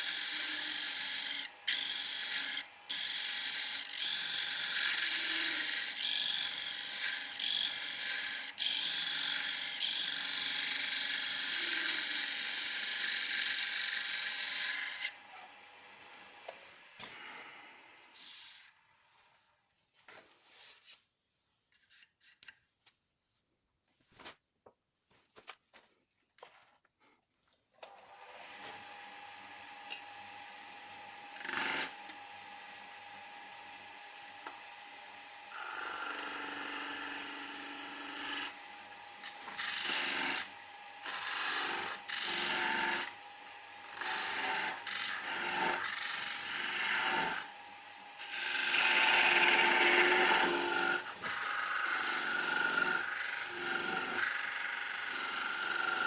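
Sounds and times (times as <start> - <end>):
chisel scraping spinning wood: 0.0 - 15.4, 35.6 - 38.6, 39.2 - 43.2, 43.8 - 47.6, 48.2 - 56.0
lathe motor hum: 0.1 - 18.2, 28.4 - 56.0.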